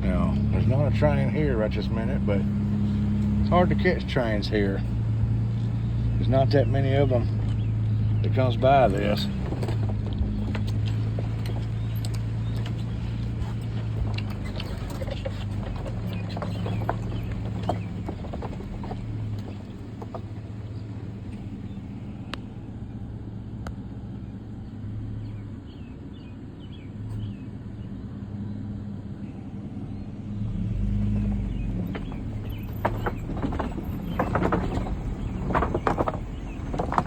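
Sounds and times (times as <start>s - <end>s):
sharp knocks and rattles: 0.0s - 22.6s, 30.6s - 37.0s
car engine hum: 0.0s - 37.0s
road rumble: 0.0s - 37.0s.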